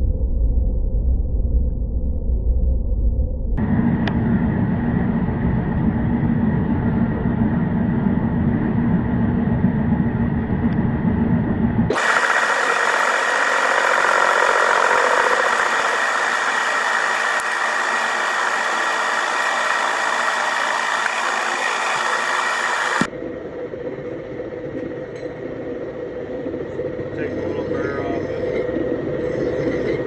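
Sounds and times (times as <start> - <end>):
lathe motor humming: 3.6 - 5.9, 11.9 - 23.1
lathe scraping steel: 11.9 - 23.1.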